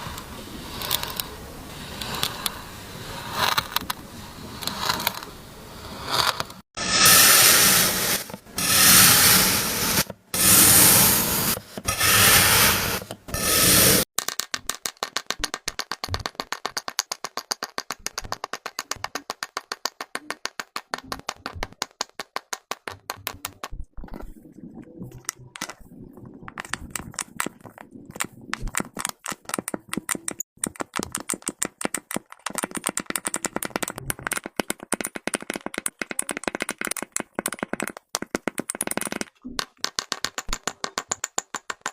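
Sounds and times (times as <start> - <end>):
kinetic sand scraping: 5.8 - 14.1.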